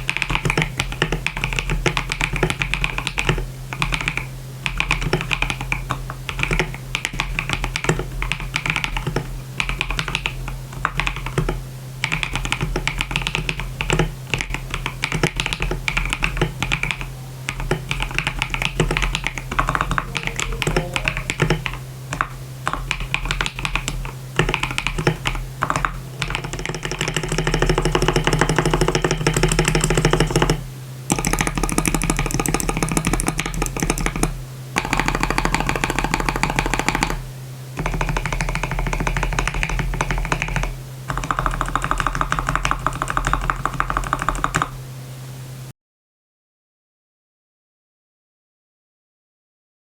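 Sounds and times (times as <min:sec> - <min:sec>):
typing on mechanical keyboard: 0:00.0 - 0:37.2, 0:37.8 - 0:44.8.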